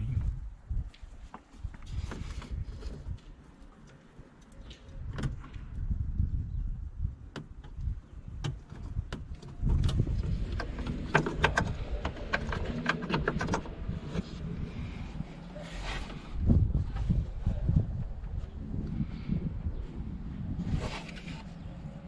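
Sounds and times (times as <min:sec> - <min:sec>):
low rumble: 0:00.0 - 0:00.9, 0:09.5 - 0:22.0
clicks and rattles of handled parts: 0:08.4 - 0:14.3.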